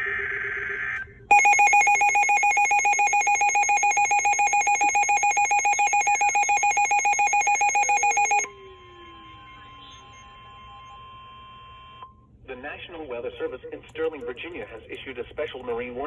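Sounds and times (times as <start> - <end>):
steady single alarm tone: 1.3 - 8.5.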